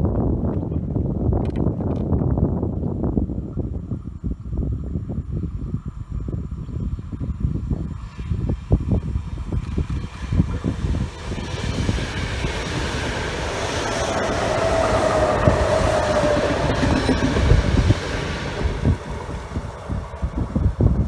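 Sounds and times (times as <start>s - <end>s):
wind buffeting microphone: 0.0s - 21.0s
train whine: 5.8s - 21.0s
train wheels rumbling on rails: 7.1s - 21.0s.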